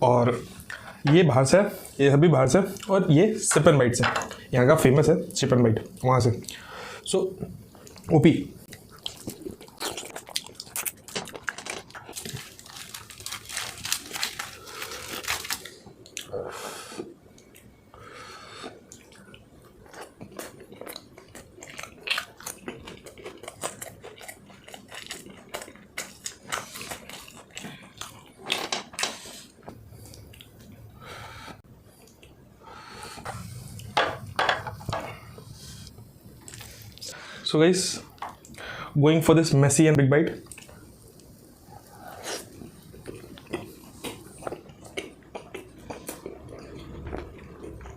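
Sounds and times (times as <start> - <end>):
chewing and lip-smacking: 18.6 - 29.1, 42.4 - 47.9.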